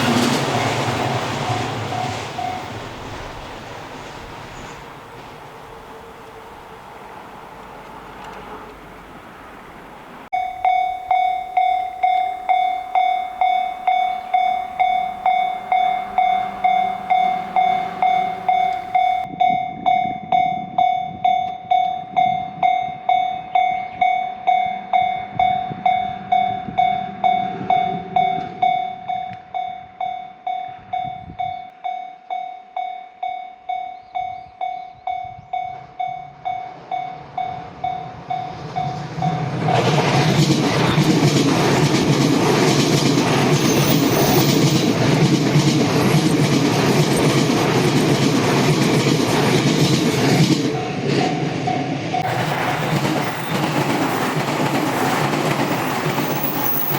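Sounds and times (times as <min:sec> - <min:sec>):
train rushing past: 0:00.0 - 0:20.9, 0:35.5 - 0:56.9
level crossing warning bell ringing: 0:00.6 - 0:02.8, 0:10.3 - 0:39.4.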